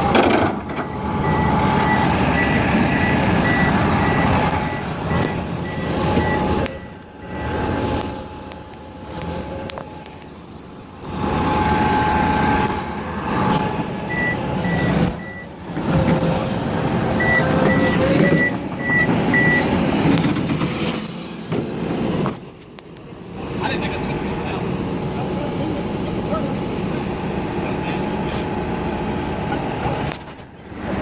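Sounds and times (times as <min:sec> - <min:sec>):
heavy machinery engine: 0:00.0 - 0:31.0
reversing alarm beeps: 0:00.7 - 0:07.6, 0:14.0 - 0:15.5, 0:17.2 - 0:19.7.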